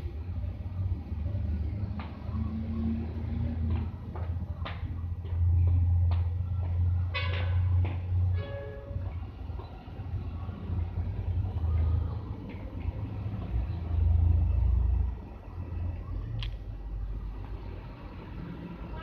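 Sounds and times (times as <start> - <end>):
bus engine rumble: 0.0 - 19.0.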